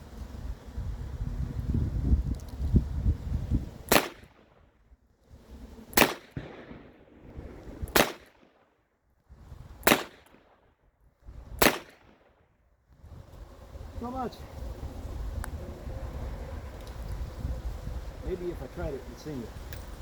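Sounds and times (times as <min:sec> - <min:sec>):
wind rumble on microphone: 0:00.0 - 0:08.2, 0:09.2 - 0:09.9, 0:11.1 - 0:11.8, 0:12.9 - 0:20.0
revolver shots with echo: 0:06.0 - 0:08.3.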